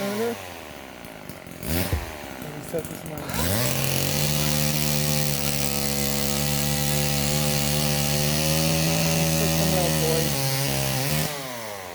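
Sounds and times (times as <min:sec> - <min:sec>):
small motor running: 0:00.0 - 0:11.9.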